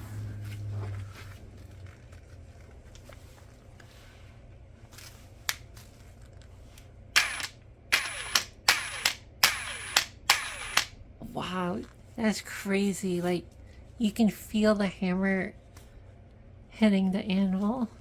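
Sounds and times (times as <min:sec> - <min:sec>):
trigger click: 0:07.2 - 0:10.9
impact wrench motor whine and clatter: 0:07.2 - 0:11.0.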